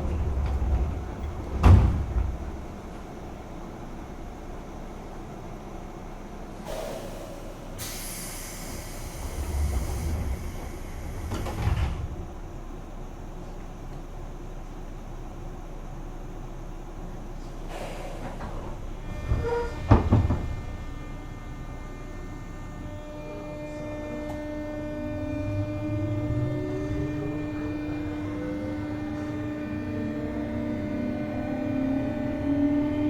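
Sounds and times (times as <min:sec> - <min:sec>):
train motor whine rising: 0:19.0 - 0:33.0.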